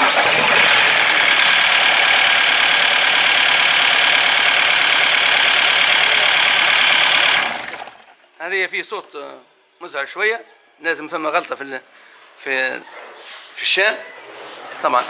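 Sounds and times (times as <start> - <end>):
diesel engine running harshly: 0.0 - 8.1.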